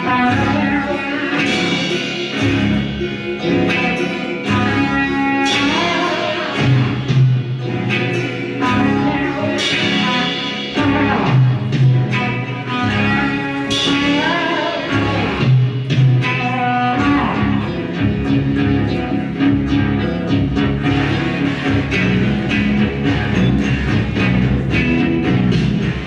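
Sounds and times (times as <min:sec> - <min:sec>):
guitar and bass music with beat: 0:00.0 - 0:26.0
sliding guitar notes: 0:00.0 - 0:26.0.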